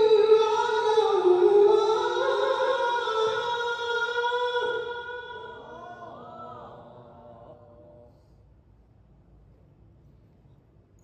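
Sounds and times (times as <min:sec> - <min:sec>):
man chanting melodically: 0:00.0 - 0:08.2.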